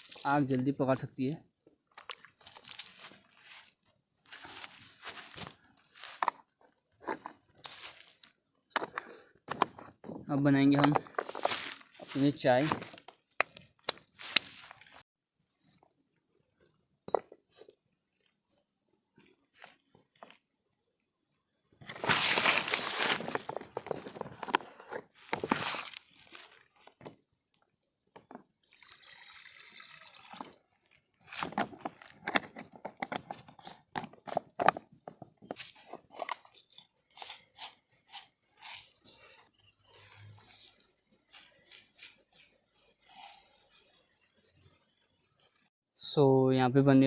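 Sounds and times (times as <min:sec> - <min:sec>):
handling clicks and knocks: 0:08.7 - 0:11.6, 0:31.4 - 0:36.6
water pouring into a pot: 0:28.6 - 0:30.6.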